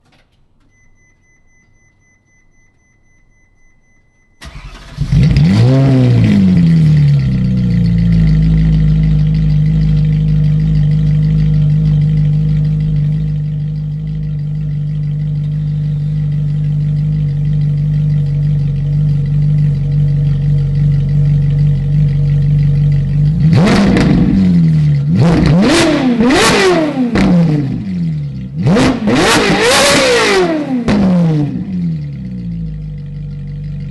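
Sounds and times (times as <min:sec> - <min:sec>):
faint steady tone: 0:00.6 - 0:04.5
car engine starting and revving: 0:04.4 - 0:33.9.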